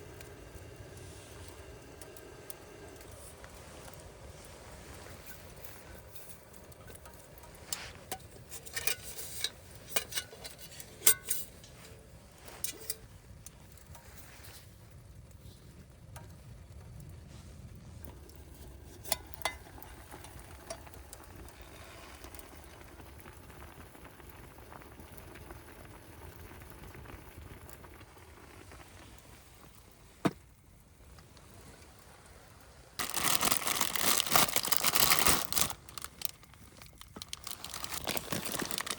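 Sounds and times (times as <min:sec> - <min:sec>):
steady low hiss: 0:00.0 - 0:38.9
metal utensils clinking on pot: 0:08.0 - 0:13.1, 0:18.9 - 0:20.8.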